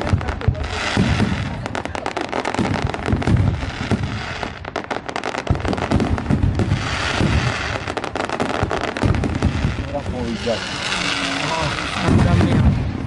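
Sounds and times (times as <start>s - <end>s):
deep fireworks booms: 0.0s - 13.0s
fireworks bangs and crackles: 0.0s - 13.0s.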